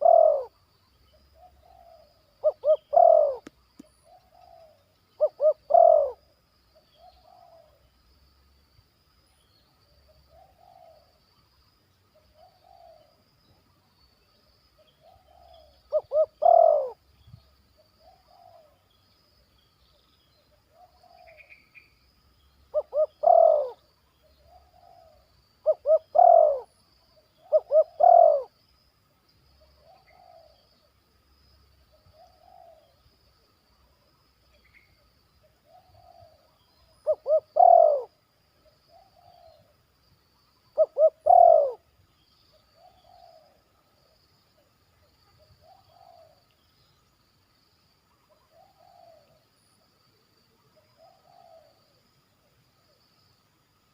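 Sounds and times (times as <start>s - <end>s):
dove cooing: 0.0s - 0.6s, 1.4s - 6.2s, 7.0s - 7.8s, 10.3s - 11.1s, 12.4s - 13.2s, 14.9s - 17.0s, 18.0s - 18.8s, 20.7s - 21.5s, 22.7s - 26.8s, 27.4s - 28.5s, 29.8s - 30.7s, 32.0s - 33.0s, 35.6s - 38.2s, 40.8s - 41.9s, 42.7s - 43.7s, 45.4s - 46.4s, 48.3s - 49.4s, 50.8s - 51.8s.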